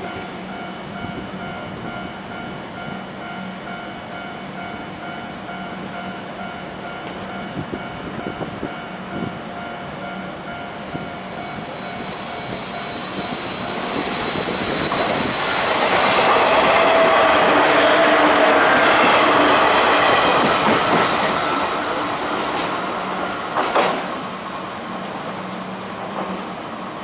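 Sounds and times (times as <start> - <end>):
level-crossing warning bell: 0.0 - 22.4
tram running noise: 0.0 - 27.0.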